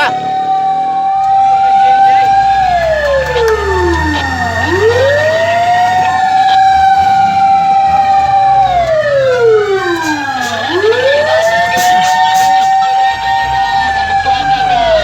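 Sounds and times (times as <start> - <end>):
fire truck siren wailing: 0.0 - 15.0
higher pitched second siren: 0.0 - 15.0
low engine rumble: 1.2 - 15.0.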